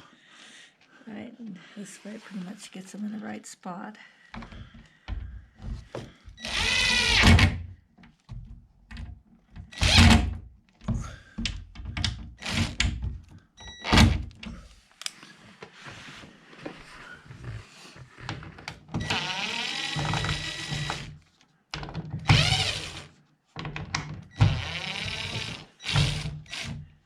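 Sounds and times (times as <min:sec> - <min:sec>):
knocks and clunks on door hinge: 0:04.4 - 0:14.5
power drill driving screw: 0:06.4 - 0:07.6, 0:09.7 - 0:10.3, 0:12.4 - 0:12.9, 0:19.0 - 0:21.2, 0:22.2 - 0:23.1, 0:24.4 - 0:26.8.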